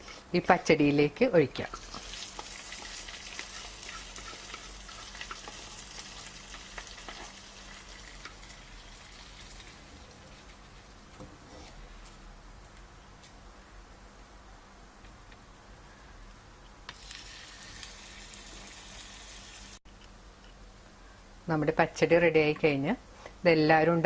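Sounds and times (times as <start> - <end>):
spices sizzling in hot oil: 1.6 - 11.0, 16.9 - 19.8.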